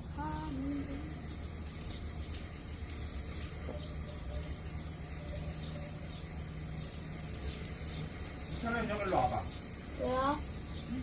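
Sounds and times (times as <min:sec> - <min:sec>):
steady low hum: 0:00.0 - 0:11.0
bird chirps: 0:02.9 - 0:09.7.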